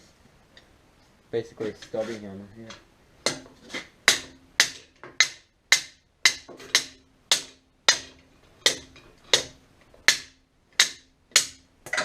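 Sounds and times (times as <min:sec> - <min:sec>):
hammer striking metal: 0:04.1 - 0:12.0.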